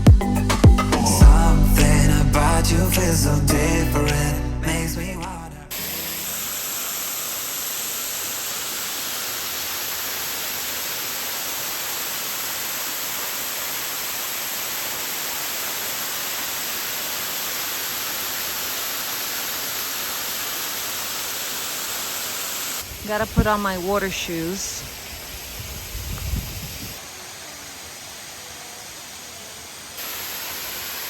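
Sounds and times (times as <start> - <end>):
waterfall rushing: 5.7 - 26.0, 26.6 - 31.0.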